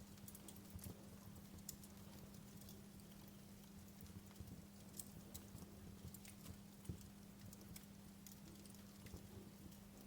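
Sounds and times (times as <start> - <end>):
low steady hum: 0.0 - 10.0
wood fire crackling: 0.0 - 10.0.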